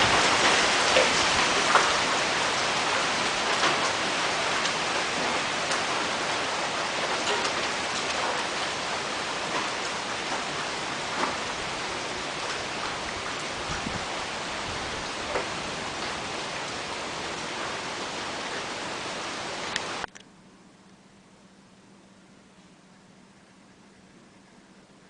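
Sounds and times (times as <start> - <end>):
heavy rain falling: 0.0 - 20.1.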